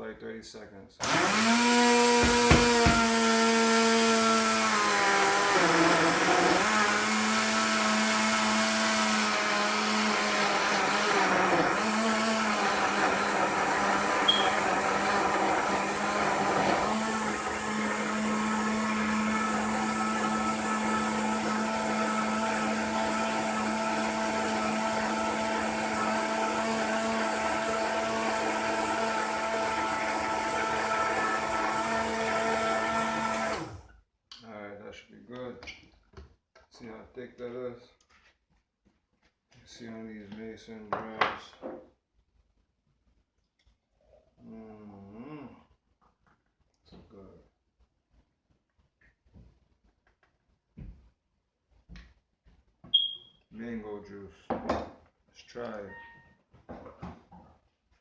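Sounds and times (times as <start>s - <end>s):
blender motor running: 1.0s - 33.9s.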